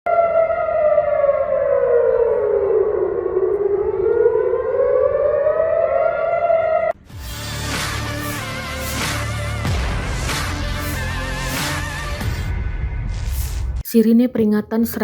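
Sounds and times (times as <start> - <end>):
air-raid siren wailing: 0.0 - 7.0.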